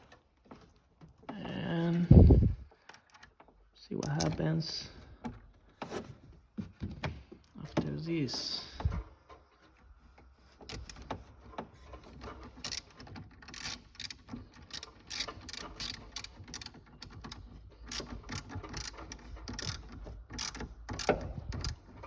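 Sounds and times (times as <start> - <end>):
ratchet wrench clicking: 12.6 - 22.0.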